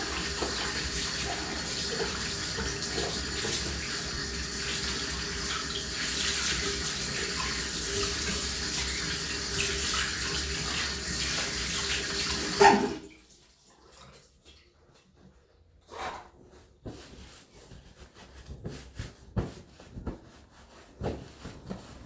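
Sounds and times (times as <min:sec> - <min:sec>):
tap water running into sink: 0:00.0 - 0:14.6.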